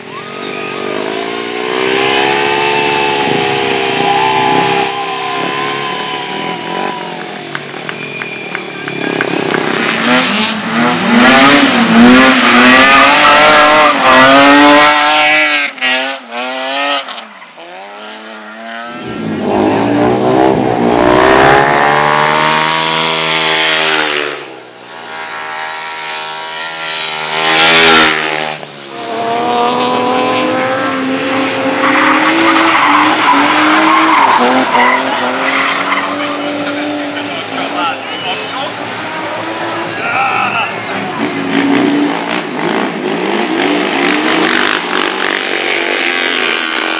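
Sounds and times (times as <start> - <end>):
racing engines revving: 0.0 - 46.9.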